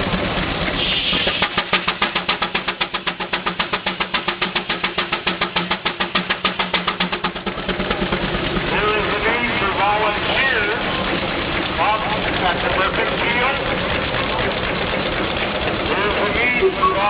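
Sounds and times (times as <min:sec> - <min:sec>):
steam engine exhaust chuffs: 0:00.0 - 0:17.0
steam hiss: 0:00.7 - 0:07.4.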